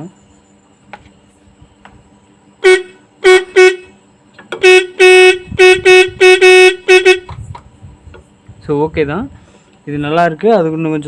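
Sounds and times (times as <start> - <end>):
electric motorcycle horn blasts: 2.6 - 7.5.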